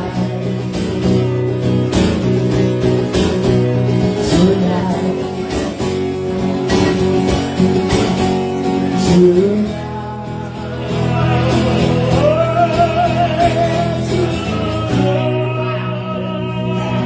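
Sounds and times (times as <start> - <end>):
person singing with vibrato: 0.0 - 1.6, 4.0 - 6.6, 8.7 - 17.0
acoustic guitar strummed: 0.0 - 17.0.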